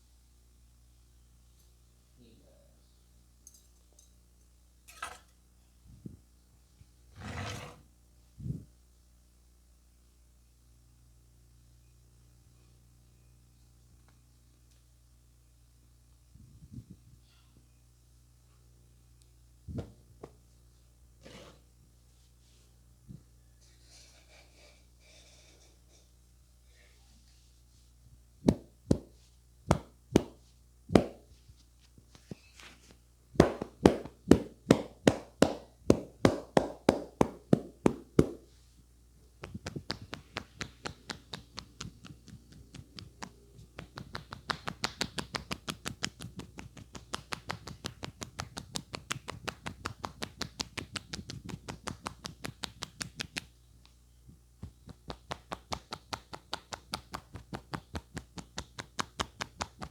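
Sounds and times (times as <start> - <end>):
hands striking head: 28.5 - 31.3, 33.4 - 38.5, 39.4 - 53.5.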